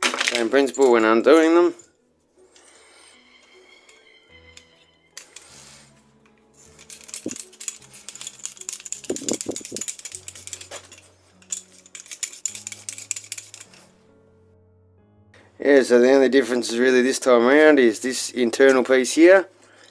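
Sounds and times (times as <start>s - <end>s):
small metal parts clicking: 6.2s - 13.9s.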